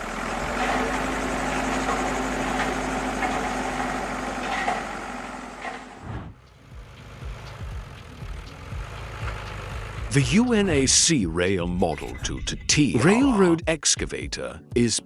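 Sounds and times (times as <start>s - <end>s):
engine knocks: 0.0s - 11.0s
excavator diesel engine running: 0.0s - 13.2s.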